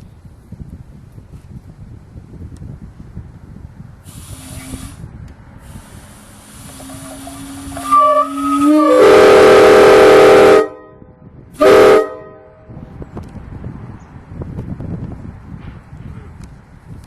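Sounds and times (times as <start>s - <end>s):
multi-tone air horn blasts: 4.1s - 5.0s, 5.6s - 12.8s.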